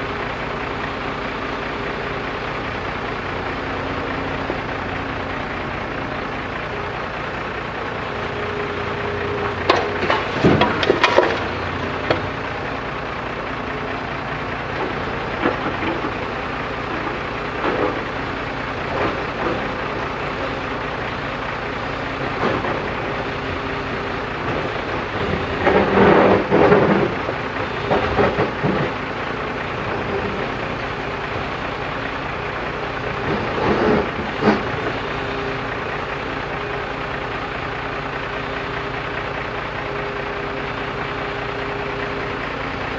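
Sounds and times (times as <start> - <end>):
diesel engine running: 0.0 - 42.9
metal clanking and clatter: 9.7 - 12.2.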